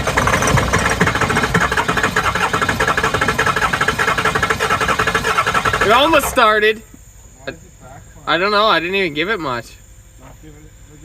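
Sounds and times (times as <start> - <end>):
diesel engine cranking by starter: 0.0 - 6.8.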